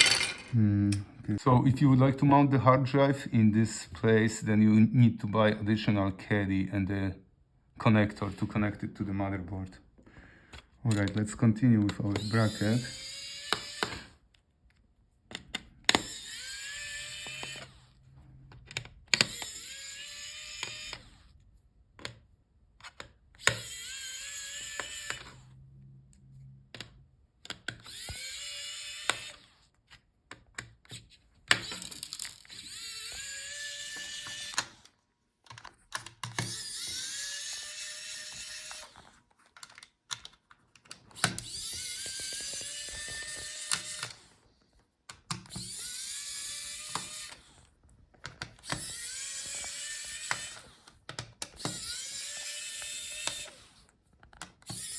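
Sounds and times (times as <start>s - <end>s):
small electric screwdriver whirring: 12.0s - 14.4s, 15.6s - 21.4s, 22.8s - 25.8s, 27.5s - 30.0s, 30.6s - 35.0s, 35.9s - 39.4s, 41.0s - 54.9s.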